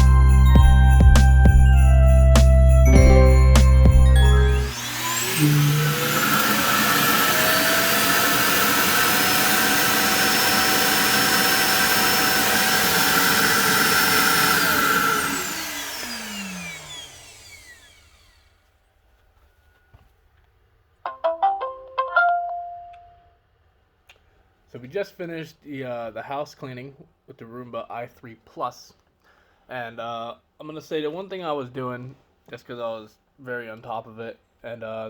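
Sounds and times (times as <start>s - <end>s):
suction motor whine: 4.2s - 18.4s.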